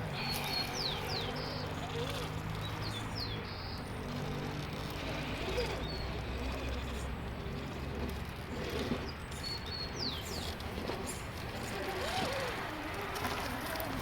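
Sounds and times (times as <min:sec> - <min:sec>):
birds chirping: 0:00.0 - 0:07.8, 0:08.5 - 0:12.4.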